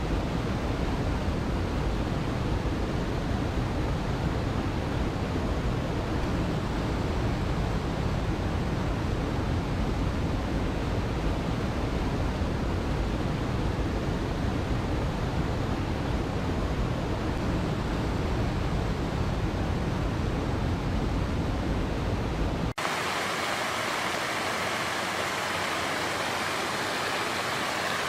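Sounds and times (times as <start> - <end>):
flowing water rushing: 22.8 - 28.0.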